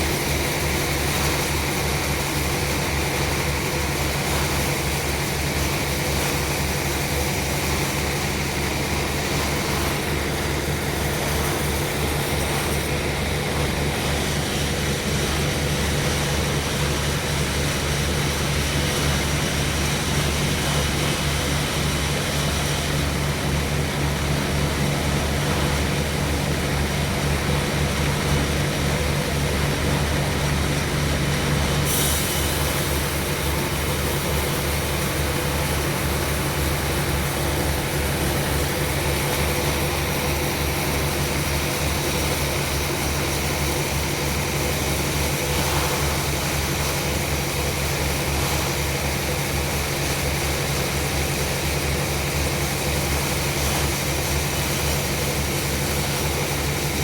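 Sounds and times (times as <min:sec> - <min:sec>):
engine hum: 0:00.0 - 0:57.0
saw rushing noise: 0:31.9 - 0:50.8.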